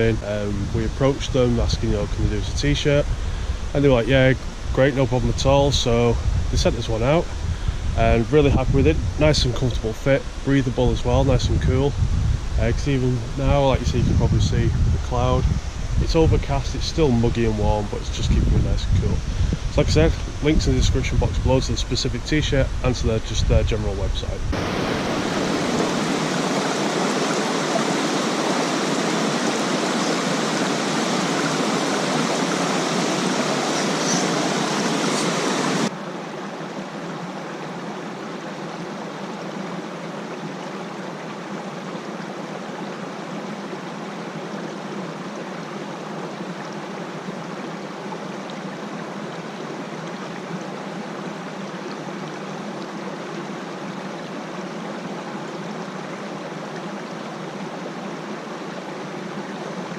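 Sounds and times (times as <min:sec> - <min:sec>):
waterfall rushing: 0:24.5 - 0:46.5.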